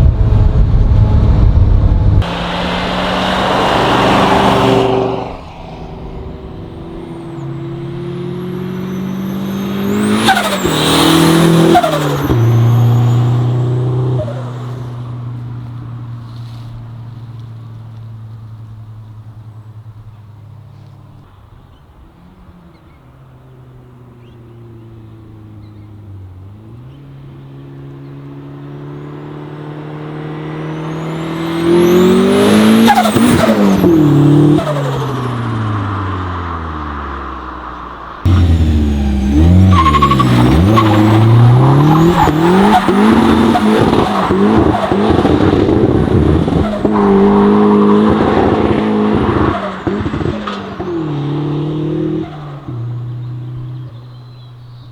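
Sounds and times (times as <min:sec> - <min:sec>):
car engine revving hard: 0:00.0 - 0:15.0, 0:26.5 - 0:36.8, 0:38.2 - 0:53.8
high squeal: 0:02.3 - 0:14.5, 0:38.3 - 0:45.2.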